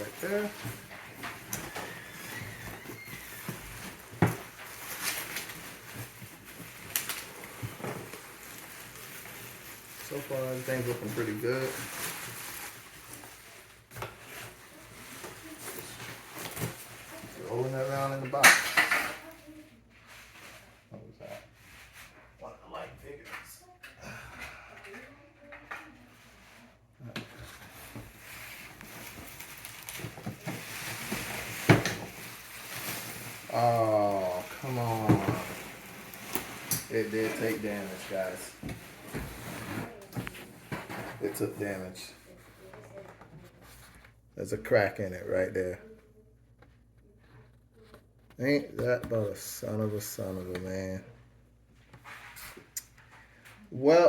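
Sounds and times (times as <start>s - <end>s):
plastic packaging crinkling: 0.0s - 18.2s, 27.5s - 42.8s
bubble wrap rustling and crackling: 0.0s - 22.2s, 25.0s - 45.9s.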